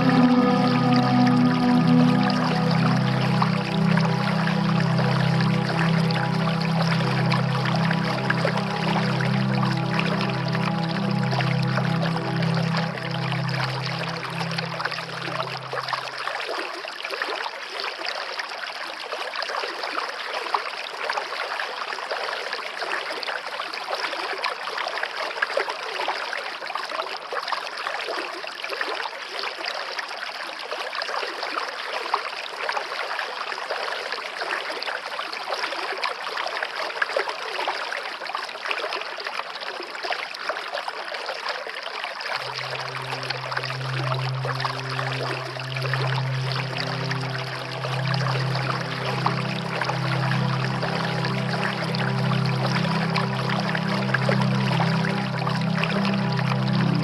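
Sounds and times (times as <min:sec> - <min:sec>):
low sustained musical tones: 0:00.0 - 0:16.8, 0:42.3 - 0:57.0.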